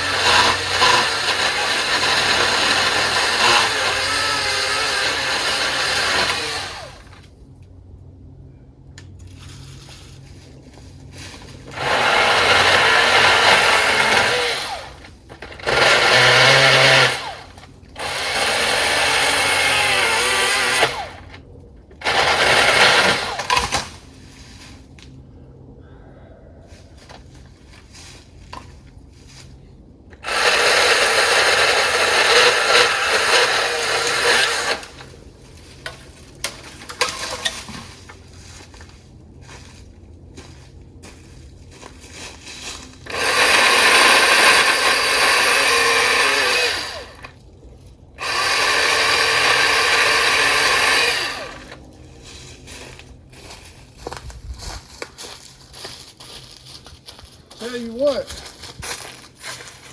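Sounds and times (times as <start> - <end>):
electric chainsaw cutting wood: 0.0 - 7.3, 11.7 - 21.4, 22.0 - 23.9, 30.1 - 35.2, 36.4 - 37.5, 43.0 - 47.4, 48.1 - 51.9.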